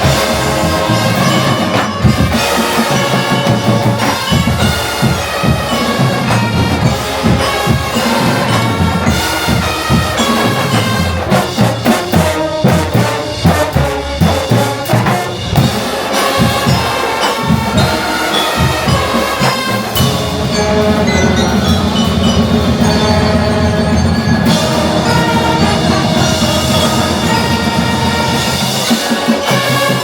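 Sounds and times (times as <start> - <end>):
brass bugles playing chords: 0.0 - 30.0
marching drums: 0.0 - 30.0.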